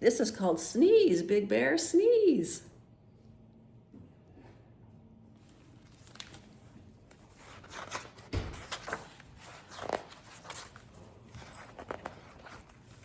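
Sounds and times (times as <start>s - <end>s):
book pages turning: 5.4s - 13.0s.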